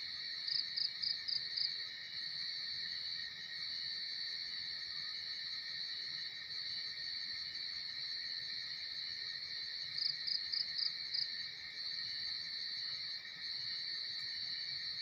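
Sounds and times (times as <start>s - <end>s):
insects chirping: 0.0s - 15.0s.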